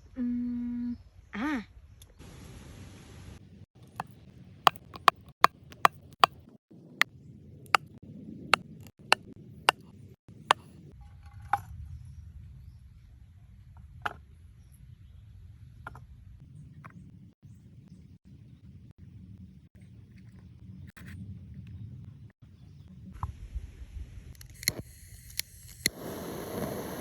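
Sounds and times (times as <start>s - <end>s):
sharp chopping knocks: 4.7s - 6.4s.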